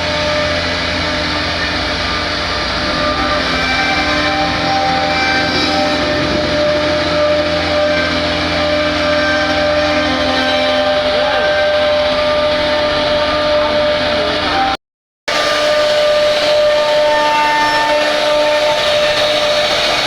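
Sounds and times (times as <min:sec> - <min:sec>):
cnc router whining: 0:00.0 - 0:20.0.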